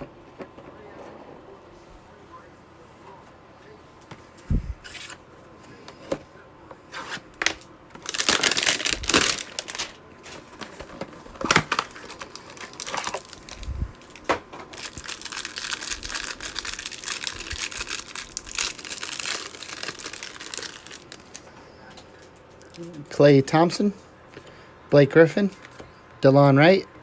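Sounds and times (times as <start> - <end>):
packaging tearing and crinkling: 7.0 - 21.5.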